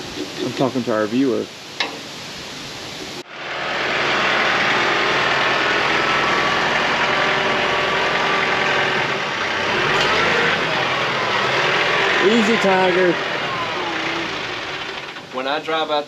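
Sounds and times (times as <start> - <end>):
vehicle engine running: 3.2 - 16.0.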